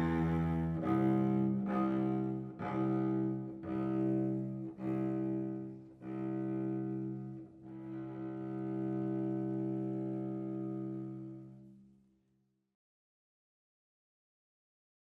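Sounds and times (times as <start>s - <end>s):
cello bowed notes: 0.0s - 11.8s.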